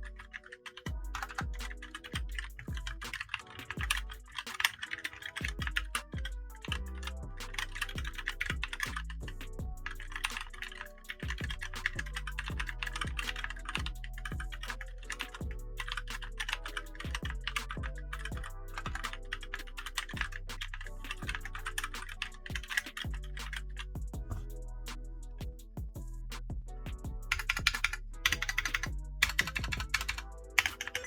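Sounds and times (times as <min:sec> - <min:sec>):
background music: 0:00.0 - 0:31.0
fast mechanical keyboard typing: 0:27.3 - 0:31.0.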